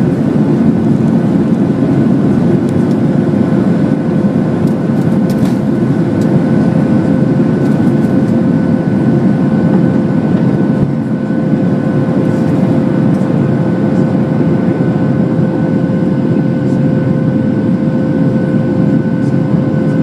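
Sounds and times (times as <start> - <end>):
jet engine drone in cabin: 0.0 - 20.0.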